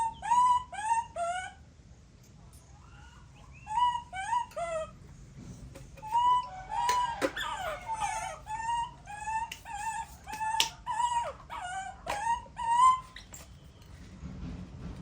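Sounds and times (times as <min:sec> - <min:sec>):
baby monkey crying: 0:00.0 - 0:01.6, 0:02.7 - 0:05.0, 0:06.0 - 0:13.5.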